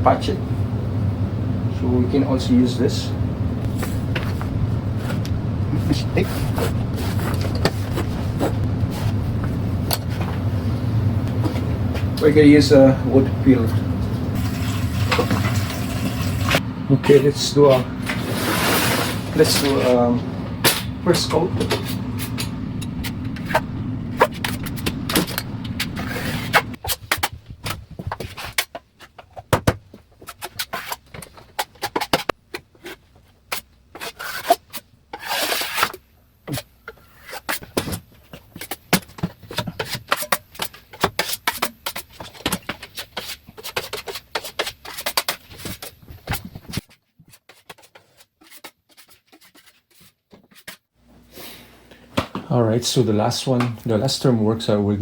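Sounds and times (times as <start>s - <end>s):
low steady hum: 0.0s - 26.8s
putty knife scraping wood: 30.2s - 50.8s.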